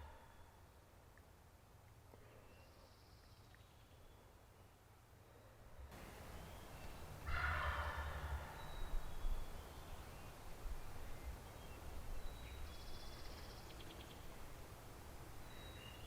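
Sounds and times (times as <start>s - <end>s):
turkey gobbling: 7.3s - 8.6s.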